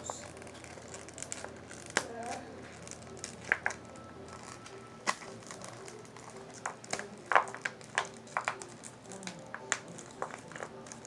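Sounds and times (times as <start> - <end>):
plastic containers tapping and clicking: 6.5 - 11.0.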